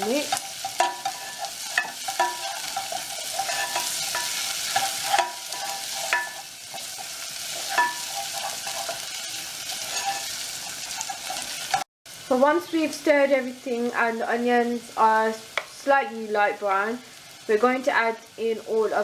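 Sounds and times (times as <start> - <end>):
utensil scraping and knocking pan: 0.0 - 11.8
onions sizzling in oil: 0.0 - 19.0.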